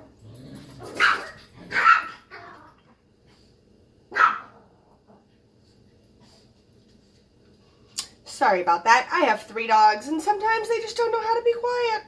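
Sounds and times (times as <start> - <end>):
dog barking: 1.0 - 2.2, 4.1 - 4.6.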